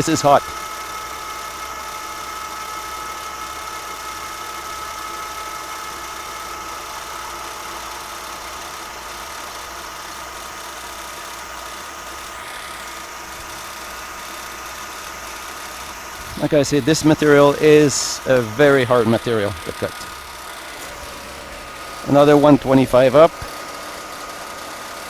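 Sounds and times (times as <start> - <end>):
milling machine cutting steel: 0.0 - 25.0
air blast hiss: 16.2 - 25.0.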